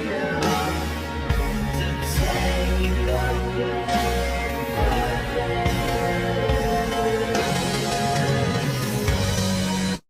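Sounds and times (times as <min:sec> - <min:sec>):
sped-up instrumental music: 0:00.0 - 0:10.0.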